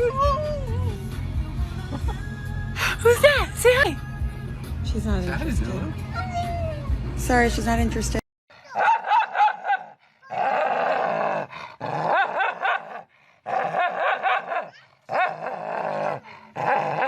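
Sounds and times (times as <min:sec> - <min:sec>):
dog howling: 0:08.8 - 0:17.0.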